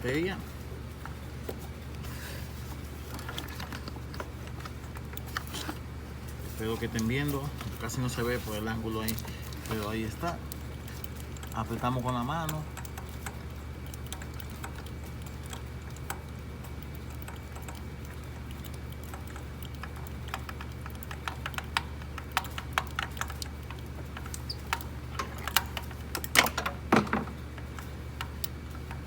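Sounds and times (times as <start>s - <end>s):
steady low hum: 0.0s - 29.0s
small metal clicks and taps: 8.9s - 29.0s.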